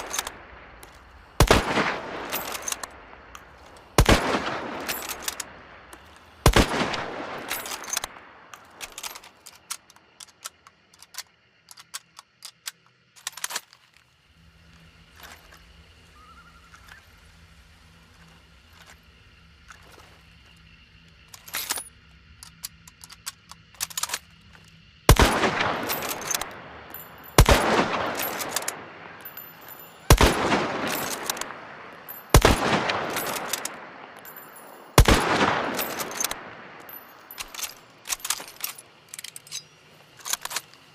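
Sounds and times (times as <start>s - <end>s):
rifle bolt clicks and knocks: 0.0s - 1.0s, 2.3s - 3.9s, 4.8s - 6.2s, 7.4s - 14.0s, 21.3s - 24.8s, 25.7s - 40.9s
rifle shots echoing: 1.4s - 3.2s, 3.9s - 5.8s, 6.4s - 8.4s, 25.1s - 38.3s.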